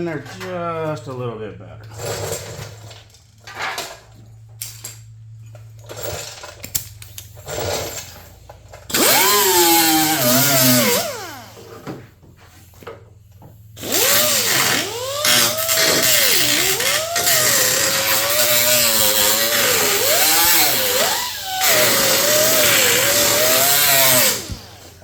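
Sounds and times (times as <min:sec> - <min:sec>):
cutoff wheel cutting metal: 0:08.9 - 0:11.8, 0:13.8 - 0:25.0.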